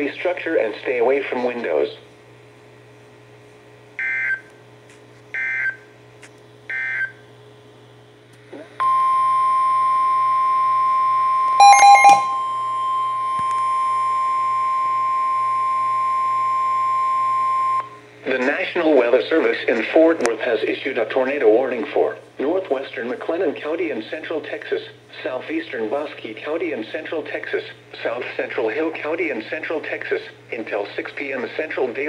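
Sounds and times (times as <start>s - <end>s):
steady warning alarm tone: 8.8s - 17.9s
loud beeps: 11.6s - 12.6s.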